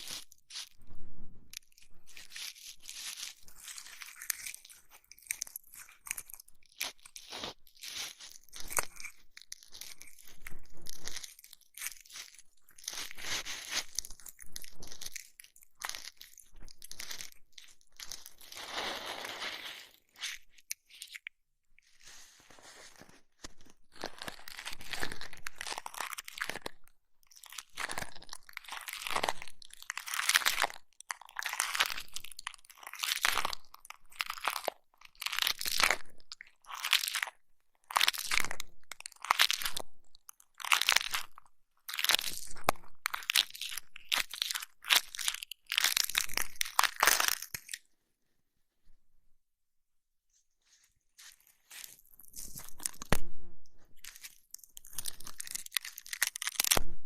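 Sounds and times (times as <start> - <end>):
crunchy rubbing on microphone: 12.0 - 15.2, 15.8 - 20.6, 21.8 - 25.2, 50.6 - 56.1.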